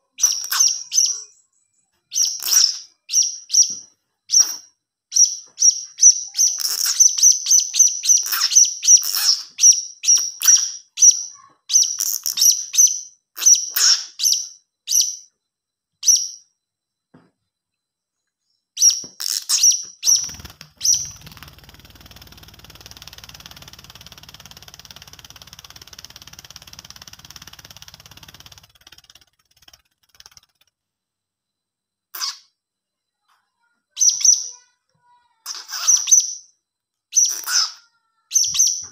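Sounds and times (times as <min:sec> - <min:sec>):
parrot chick chirping: 0:00.0 - 0:01.5, 0:18.8 - 0:23.5, 0:35.4 - 0:36.4.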